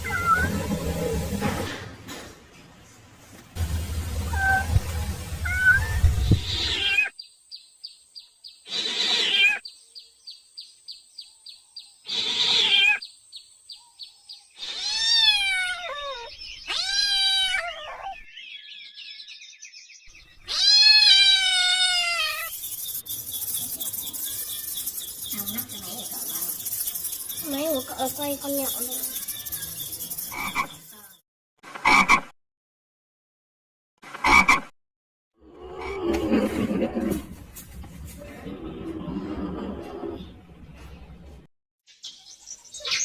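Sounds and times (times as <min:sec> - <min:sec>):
kitten meowing: 0:05.4 - 0:07.1, 0:14.6 - 0:18.2, 0:20.5 - 0:22.5
insects chirping: 0:22.5 - 0:31.1.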